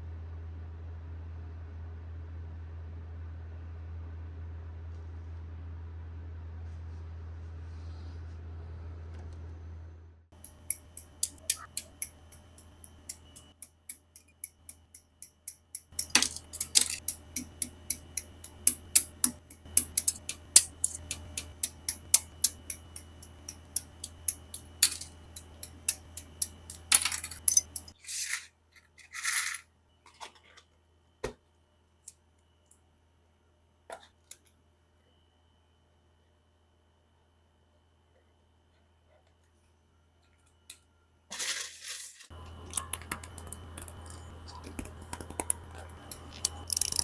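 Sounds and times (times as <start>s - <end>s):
plastic parts clicking together: 15.8s - 28.0s, 42.3s - 47.0s.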